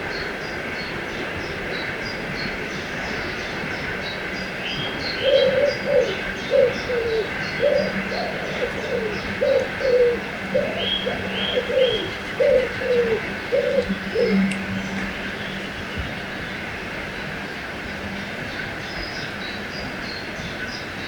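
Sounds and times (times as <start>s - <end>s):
flowing water: 0.0s - 21.0s
small birds chirping: 2.1s - 15.7s
bird cooing: 5.1s - 15.1s.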